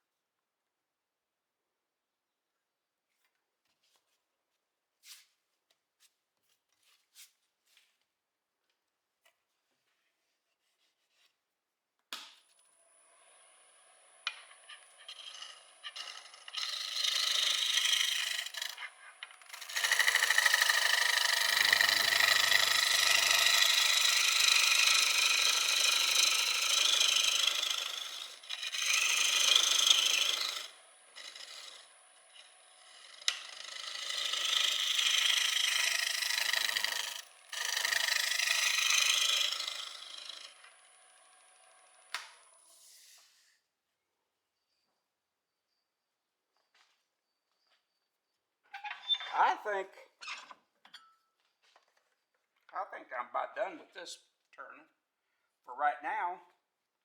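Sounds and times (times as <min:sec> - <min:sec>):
lathe whine: 0:12.9 - 0:42.6
turning tool cutting wood: 0:13.0 - 0:42.7.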